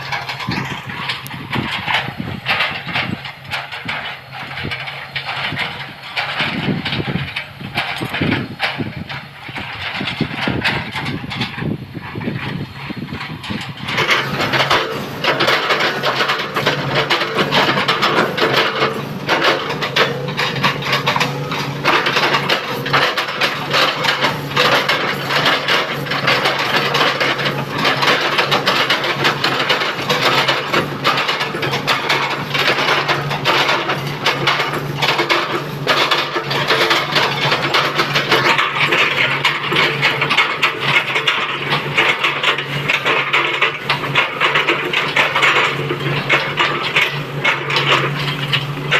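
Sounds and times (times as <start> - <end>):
excavator diesel engine running: 0.0 - 48.9
bucket crushing wood: 10.2 - 48.9.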